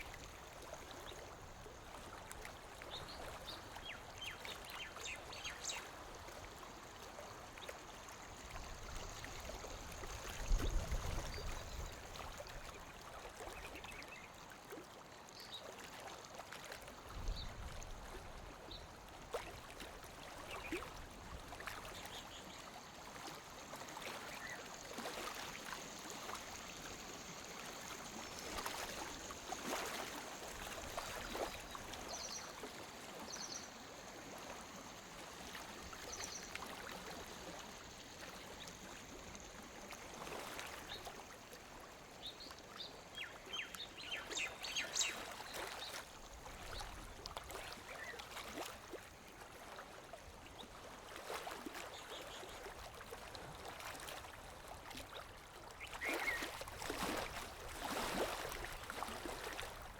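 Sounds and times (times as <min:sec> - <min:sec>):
lake water lapping on shore: 0:00.0 - 0:59.9.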